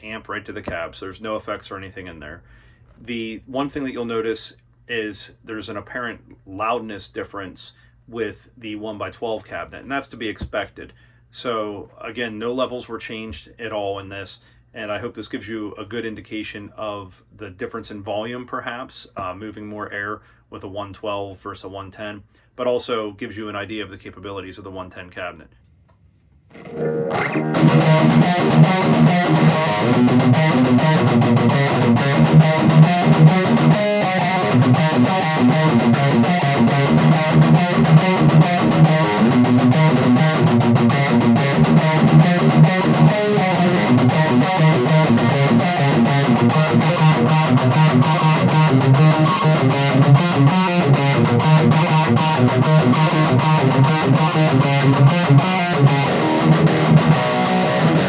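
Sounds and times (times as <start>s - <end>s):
distorted electric guitar riffs: 26.5s - 58.0s.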